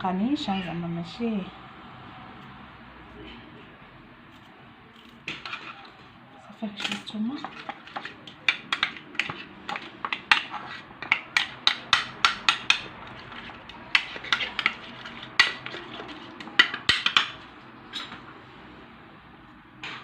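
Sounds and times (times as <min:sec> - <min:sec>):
metal spoon clinking bowl: 0:06.8 - 0:18.1.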